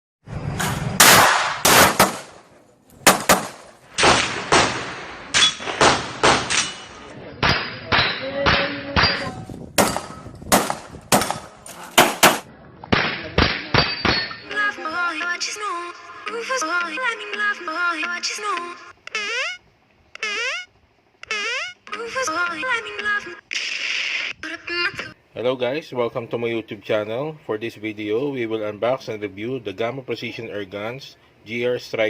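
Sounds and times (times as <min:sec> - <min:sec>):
air revolver shots: 0:01.0 - 0:02.4, 0:03.0 - 0:09.1, 0:09.8 - 0:14.3.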